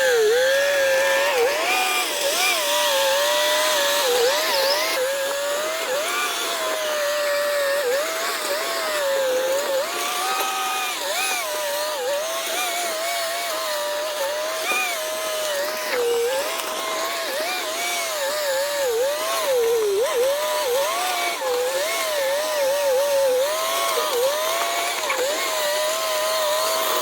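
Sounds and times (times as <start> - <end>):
motor whine: 0.0 - 27.0.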